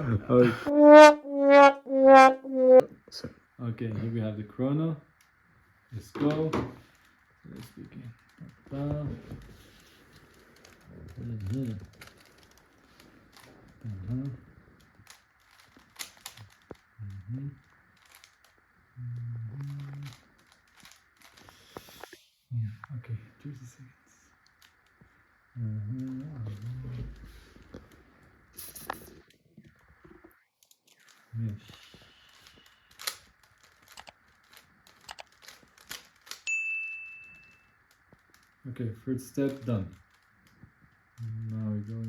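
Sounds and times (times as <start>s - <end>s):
person making short sounds: 0.3s - 2.8s
plastic cube clicking and rattling: 10.1s - 14.2s, 14.8s - 16.9s, 17.9s - 18.6s, 19.6s - 21.6s, 31.9s - 36.5s
plastic cube clicks: 32.4s - 36.5s
high ding: 36.5s - 37.7s.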